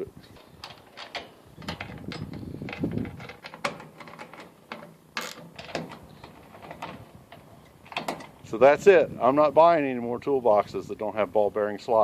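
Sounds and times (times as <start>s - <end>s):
metal tool cabinet rattling: 0.3s - 8.6s.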